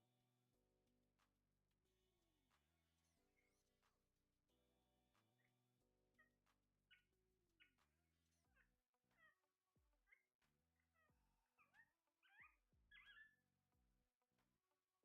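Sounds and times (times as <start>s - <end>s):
faint parrot calls: 11.0s - 13.5s.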